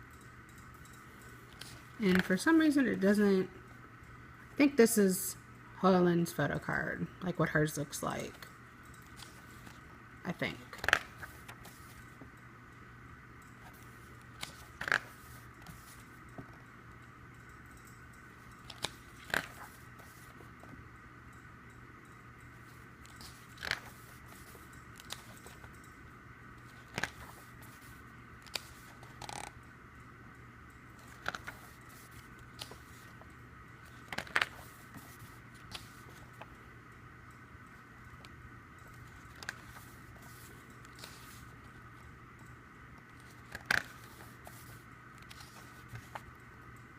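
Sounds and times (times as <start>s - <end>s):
steady low hum: 0.0s - 46.9s
paper rustling and clicks: 10.7s - 12.1s, 13.6s - 16.5s, 18.6s - 20.4s, 23.0s - 25.7s, 26.7s - 29.5s, 31.0s - 33.2s, 33.8s - 36.5s, 39.1s - 41.5s, 43.2s - 46.3s.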